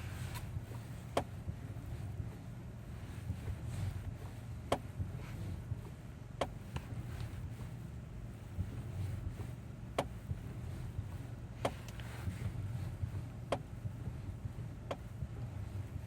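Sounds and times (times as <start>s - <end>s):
low vehicle rumble: 0.0s - 16.0s
steering knocking: 0.0s - 16.0s.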